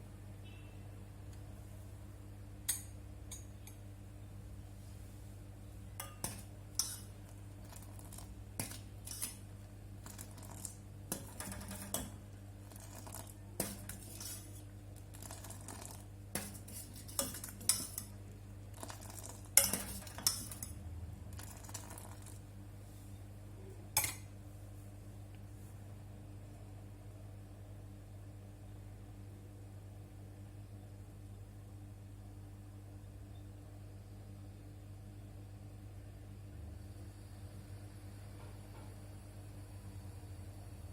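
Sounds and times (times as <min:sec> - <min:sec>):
steady low hum: 0:00.0 - 0:40.9
metal utensils clinking on cookware: 0:06.0 - 0:07.2, 0:08.6 - 0:09.4, 0:16.4 - 0:18.2, 0:18.8 - 0:20.8, 0:24.0 - 0:24.3.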